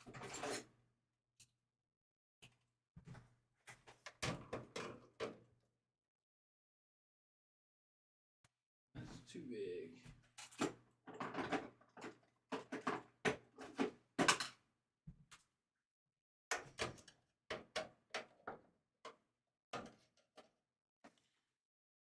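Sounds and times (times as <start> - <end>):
computer parts knocking and rattling: 10.5 - 14.6.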